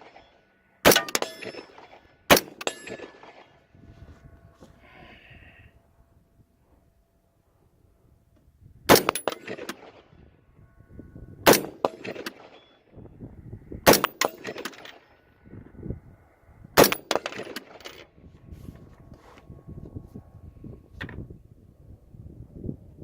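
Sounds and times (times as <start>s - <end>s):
rifle shots with echoes: 0.0s - 3.6s, 8.9s - 10.2s, 11.5s - 12.8s, 13.8s - 15.0s, 16.8s - 17.9s.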